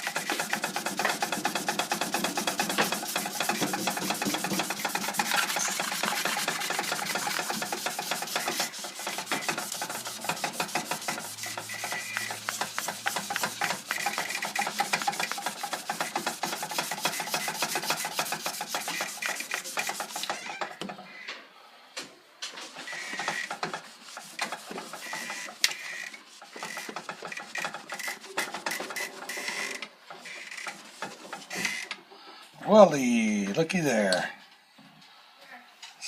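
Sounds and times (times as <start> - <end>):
fast scrubbing with eraser sponge: 0.0 - 20.3, 23.2 - 25.5, 26.3 - 28.8.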